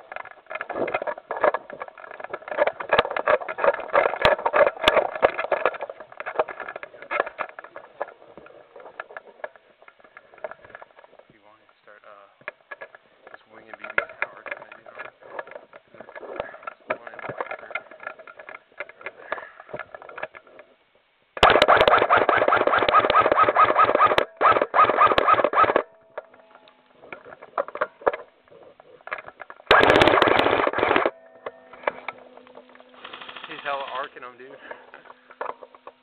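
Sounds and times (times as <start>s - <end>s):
faint distant clicks and pops: 0.0s - 21.4s
airsoft gun firing full auto: 21.4s - 25.9s, 29.7s - 31.2s.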